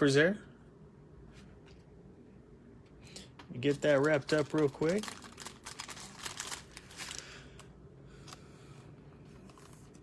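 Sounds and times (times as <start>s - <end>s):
plastic sleeve crinkling: 3.5s - 7.7s.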